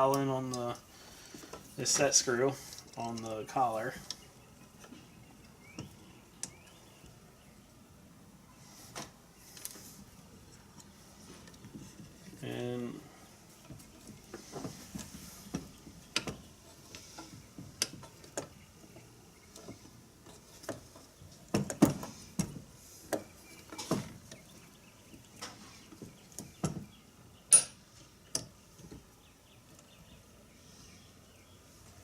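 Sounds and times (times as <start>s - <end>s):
allen key clicking on metal parts: 27.5s - 28.6s.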